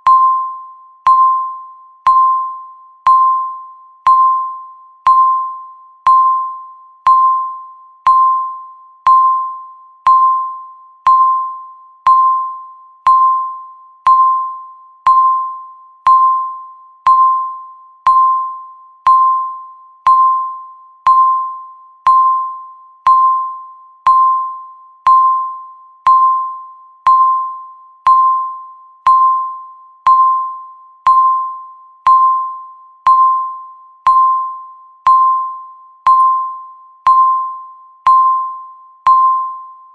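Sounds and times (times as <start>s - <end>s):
countdown timer beeping: 0.0s - 39.9s.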